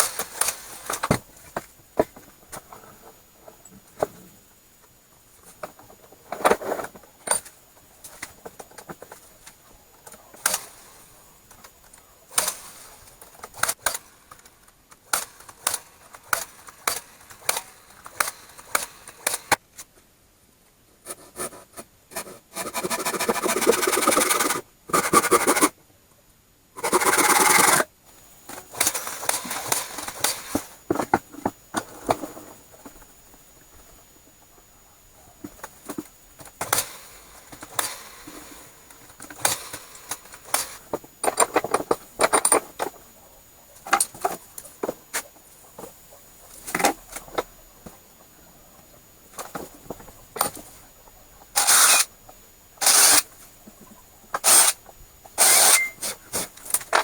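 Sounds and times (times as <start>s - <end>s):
power tool running: 51.6s - 52.1s, 52.8s - 53.3s, 54.4s - 54.8s, 55.4s - 56.1s
metallic clinks of tools: 55.4s - 56.0s.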